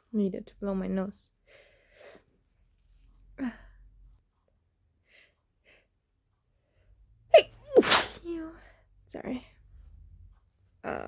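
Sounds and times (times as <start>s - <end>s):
woman sneezing: 7.4s - 8.3s.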